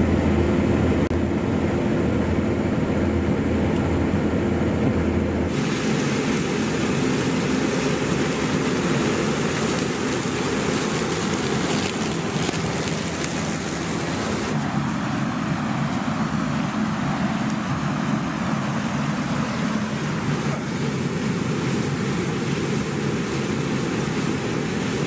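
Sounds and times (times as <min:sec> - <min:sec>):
combine harvester engine hum: 0:00.0 - 0:25.0
rushing hiss: 0:05.5 - 0:14.6.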